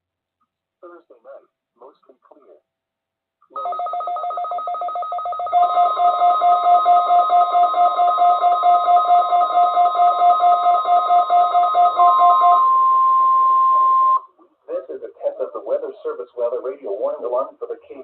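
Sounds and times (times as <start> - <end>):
steady single-pitch alarm tone: 3.5 - 14.3.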